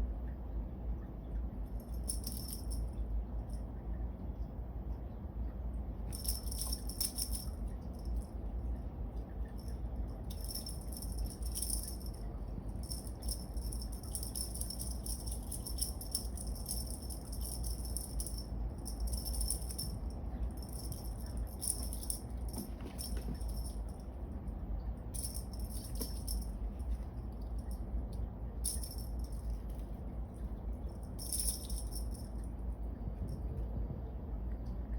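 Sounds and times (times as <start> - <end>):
cat teaser wand rattling: 1.7 - 3.6, 6.1 - 8.6, 9.5 - 32.6.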